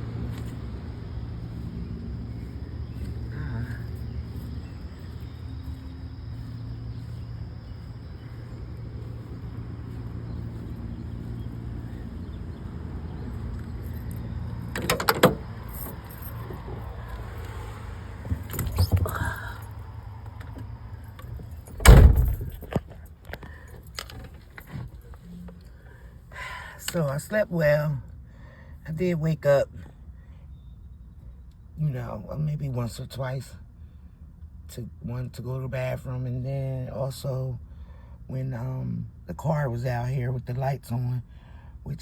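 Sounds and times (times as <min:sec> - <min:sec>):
low engine hum: 0:00.0 - 0:42.0
clattering and jangling: 0:13.5 - 0:17.3, 0:20.4 - 0:25.7
vehicle door shutting: 0:14.6 - 0:25.6.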